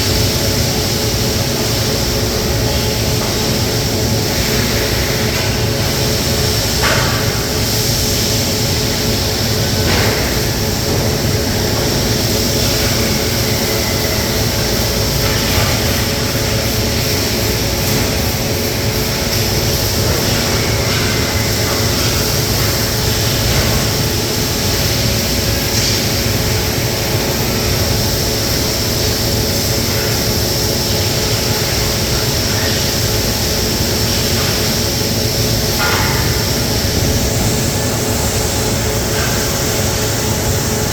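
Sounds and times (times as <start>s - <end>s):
robotic welding machine hum: 0.0s - 40.9s.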